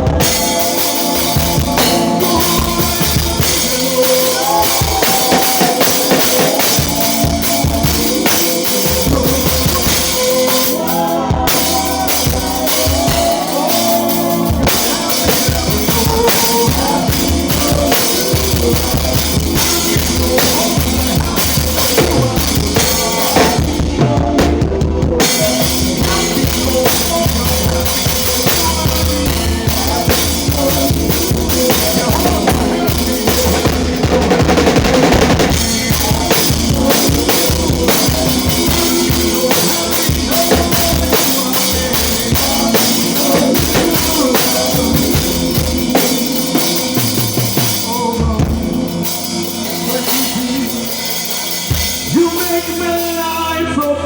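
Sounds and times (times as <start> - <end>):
drum kit beat: 0.0 - 54.0
live band playing instrumental: 0.0 - 54.0.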